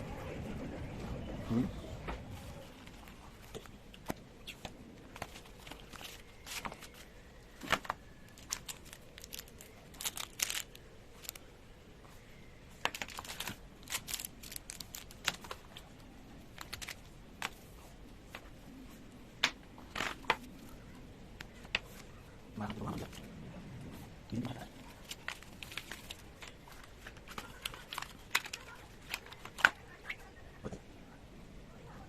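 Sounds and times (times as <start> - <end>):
crinkling rustles: 2.0 - 23.3, 23.9 - 30.5
packaging being handled: 2.4 - 11.5, 12.1 - 18.6, 24.4 - 30.1.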